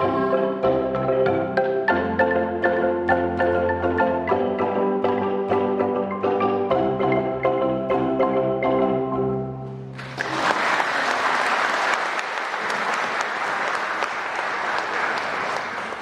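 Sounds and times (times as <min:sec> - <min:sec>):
audience applause: 0:10.0 - 0:16.0.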